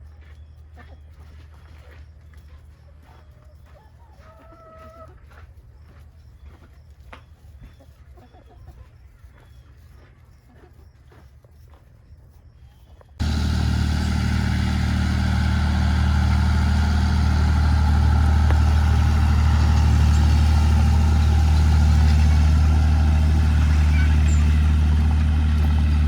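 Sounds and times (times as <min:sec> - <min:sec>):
tractor engine idling: 0:13.2 - 0:26.0.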